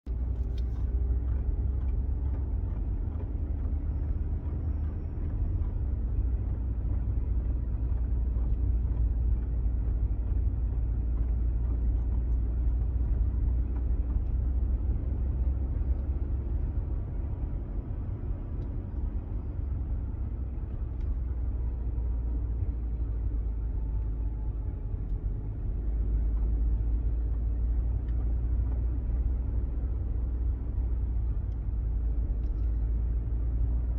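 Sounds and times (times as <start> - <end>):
car driving low rumble: 0.0 - 33.9.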